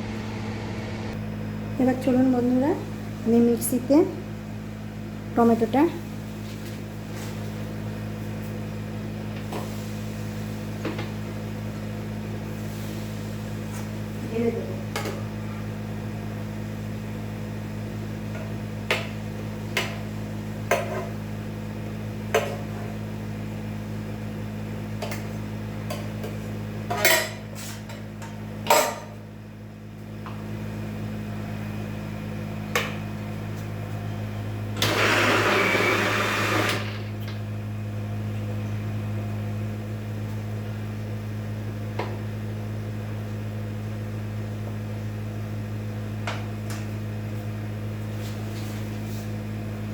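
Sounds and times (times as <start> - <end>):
rushing noise: 0.0 - 1.2
low electrical hum: 0.0 - 49.9.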